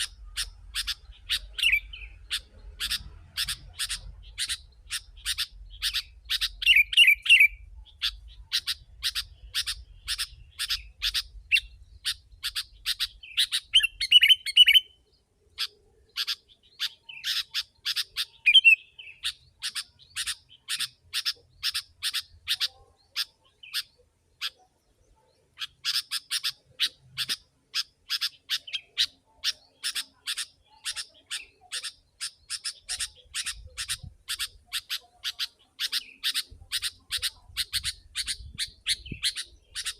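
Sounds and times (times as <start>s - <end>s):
bird warbling: 0.0s - 14.9s, 25.5s - 39.9s
bird chirping rapidly: 0.0s - 39.9s.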